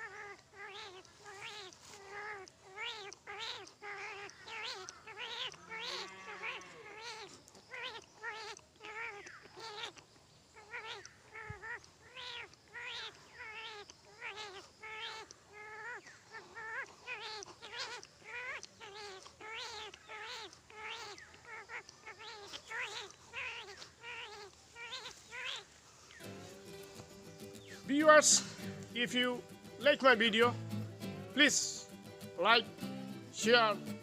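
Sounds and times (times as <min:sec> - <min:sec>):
man imitating kitten mewing: 0:27.8 - 0:30.5, 0:31.3 - 0:32.7.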